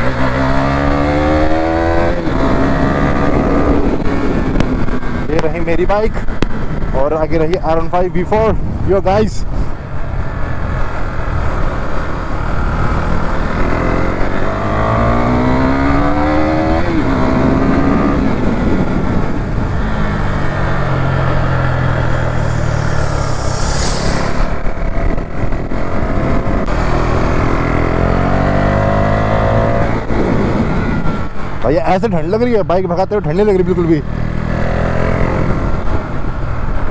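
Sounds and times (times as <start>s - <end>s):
motorcycle engine accelerating: 0.0s - 5.4s, 9.7s - 31.6s, 33.4s - 36.9s
hissing rush: 21.9s - 24.9s.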